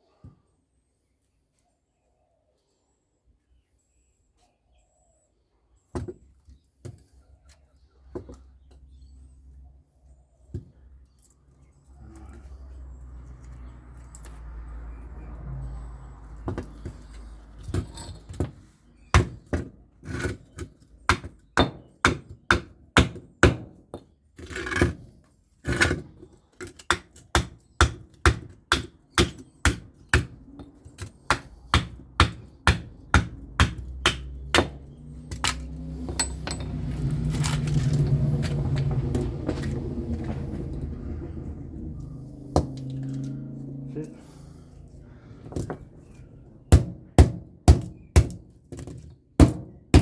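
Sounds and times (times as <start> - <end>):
low rumble: 34.9 - 45.2.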